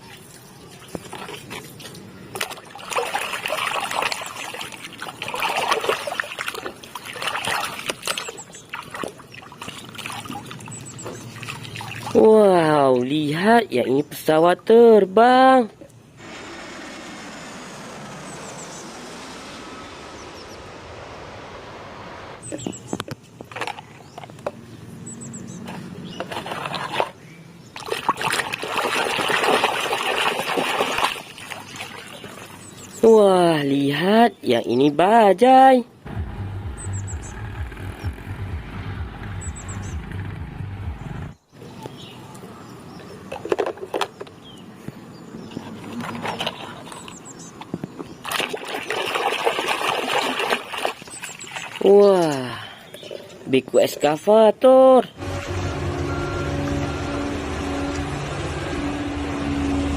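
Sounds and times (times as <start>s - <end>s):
rush of running water: 0.0s - 10.7s, 27.8s - 32.6s, 48.3s - 52.5s
water splashing and trickling: 0.0s - 13.7s, 16.2s - 24.6s, 25.5s - 34.6s, 41.6s - 59.9s.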